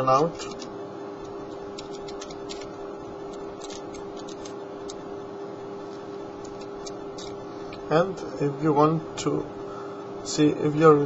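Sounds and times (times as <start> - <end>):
lock pick raking lock pins: 0.2 - 5.0.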